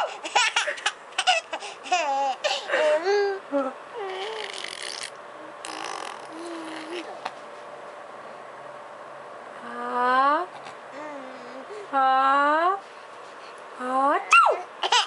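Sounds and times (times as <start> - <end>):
baby laughing: 0.0 - 3.4, 6.3 - 7.2, 14.8 - 15.0
baby cooing: 4.0 - 7.2, 11.0 - 11.8.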